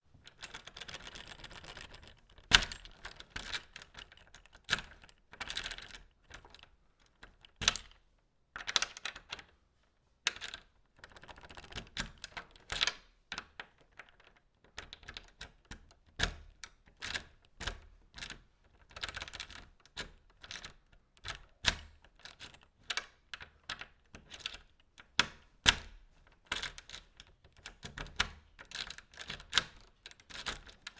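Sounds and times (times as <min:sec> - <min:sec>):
key working a door lock: 0:00.3 - 0:06.4.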